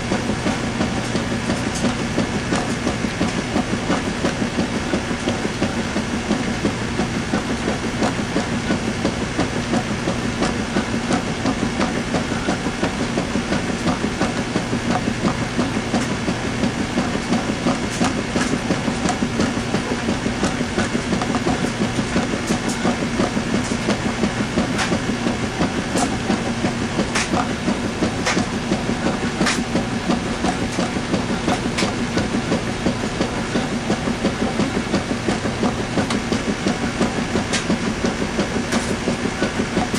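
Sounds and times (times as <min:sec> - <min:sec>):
washing machine running: 0:00.0 - 0:39.9.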